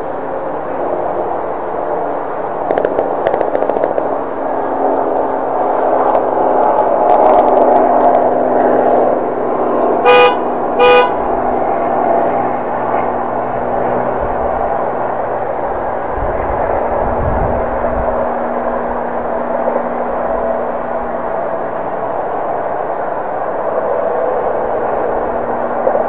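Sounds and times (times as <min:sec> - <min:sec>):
road traffic noise: 0:00.0 - 0:26.0
vehicle horn toots: 0:10.0 - 0:11.3.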